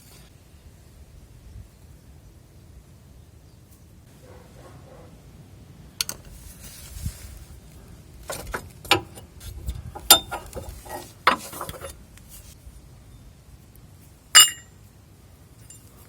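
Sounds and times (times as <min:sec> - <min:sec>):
metal tools clinking: 0:08.3 - 0:09.2, 0:10.0 - 0:12.0, 0:14.4 - 0:14.7, 0:15.6 - 0:16.0.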